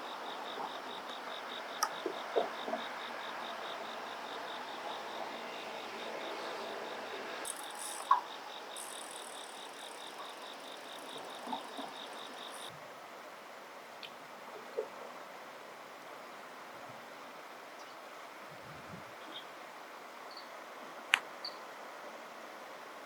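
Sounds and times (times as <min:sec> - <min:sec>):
high insect buzz: 0:00.0 - 0:12.7
insects pulsed chirping: 0:00.0 - 0:12.7.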